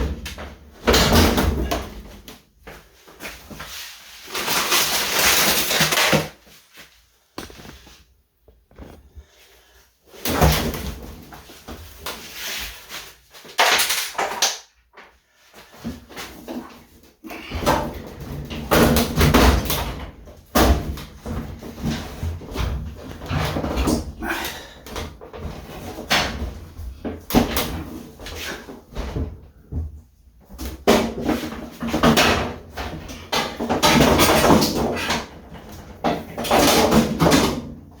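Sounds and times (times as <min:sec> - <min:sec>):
clunks and knocks in washing machine: 0:00.0 - 0:02.4, 0:10.2 - 0:11.9, 0:17.3 - 0:38.0.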